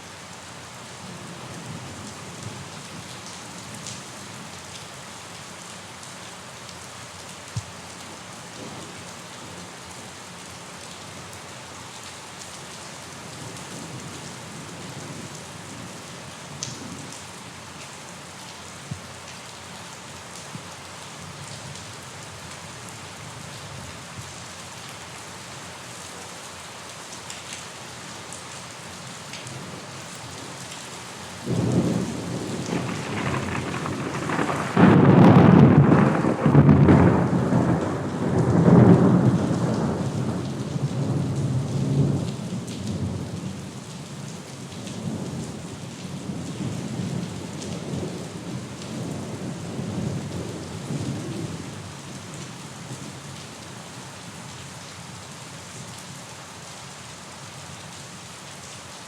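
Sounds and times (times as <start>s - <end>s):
rain falling: 0.0s - 59.0s
thunder rumbling: 31.5s - 40.6s.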